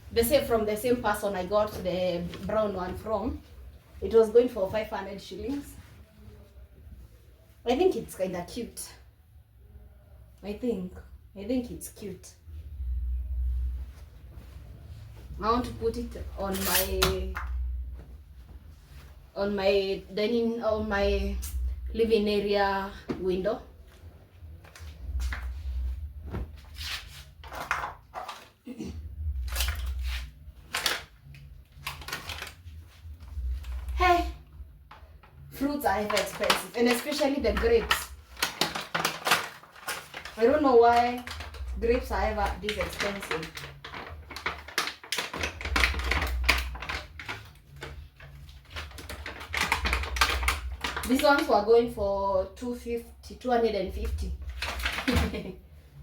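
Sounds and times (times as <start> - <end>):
rustling of bought items: 0.0 - 56.0
grocery packaging rustling: 35.8 - 51.6.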